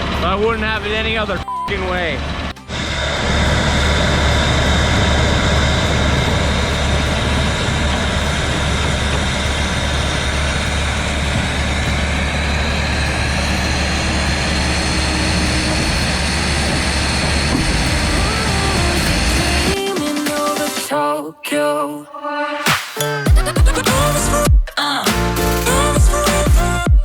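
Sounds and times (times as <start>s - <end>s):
diesel machinery droning: 0.0s - 19.8s
high tone: 1.3s - 19.9s.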